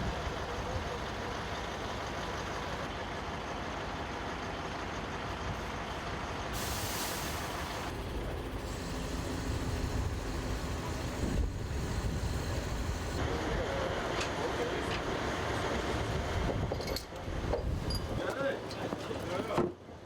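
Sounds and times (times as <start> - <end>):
heavy vehicle engine rumbling: 0.0 - 16.7
loud air hiss: 6.6 - 7.9, 8.6 - 13.2.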